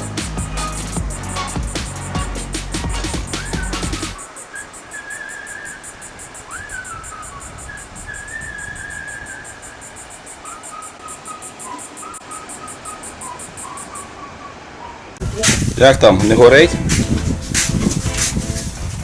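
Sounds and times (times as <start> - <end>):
whistled tune: 0.0 - 9.7, 10.4 - 14.5
fast high ticking: 0.0 - 14.0
low rumble of wind: 3.1 - 19.0.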